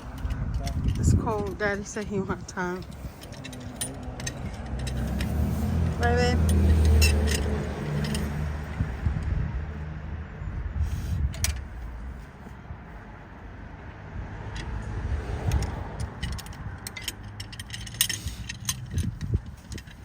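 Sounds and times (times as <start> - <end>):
metal tools clinking and rattling: 0.0 - 9.0, 14.5 - 20.0.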